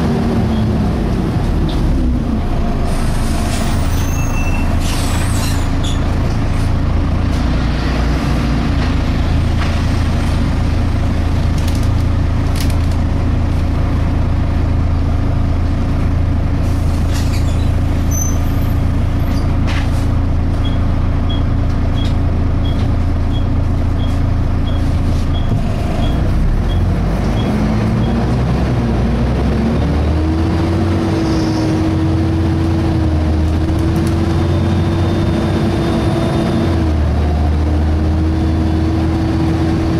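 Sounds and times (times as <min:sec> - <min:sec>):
bus engine running: 0:00.0 - 0:39.9.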